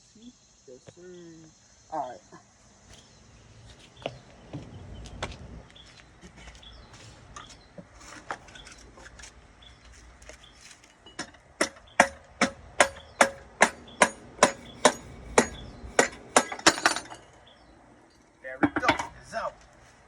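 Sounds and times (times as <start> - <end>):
hammer striking metal: 11.1 - 17.4.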